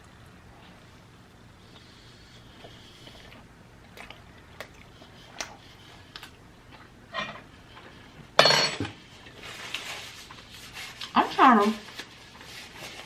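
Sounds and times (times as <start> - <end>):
wet chewing smacks: 1.7 - 7.0.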